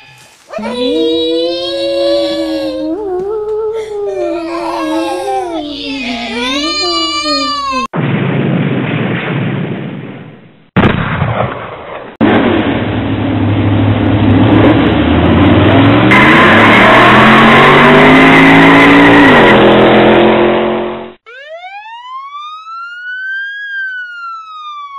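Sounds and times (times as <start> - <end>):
police siren wail: 0.5 - 7.6, 21.2 - 24.9
car engine revving: 13.7 - 21.2.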